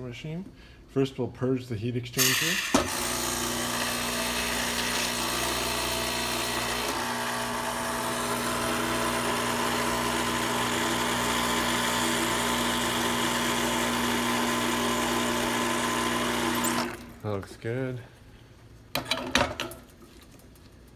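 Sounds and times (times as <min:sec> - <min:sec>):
espresso machine pump humming: 0:02.2 - 0:17.2.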